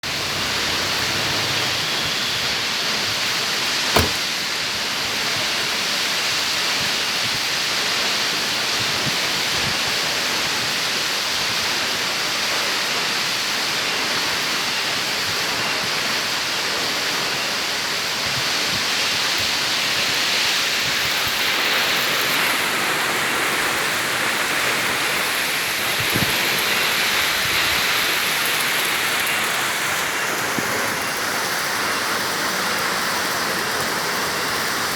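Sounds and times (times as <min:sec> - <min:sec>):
sharp click: 0:04.0 - 0:04.3.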